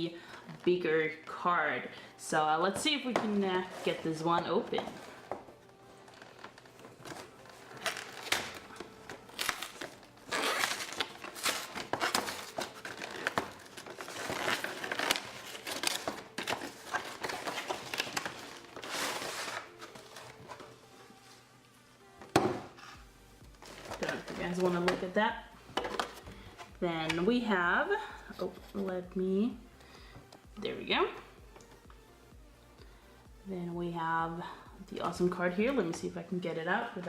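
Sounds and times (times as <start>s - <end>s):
packaging crinkling and rustling: 4.8s - 20.7s.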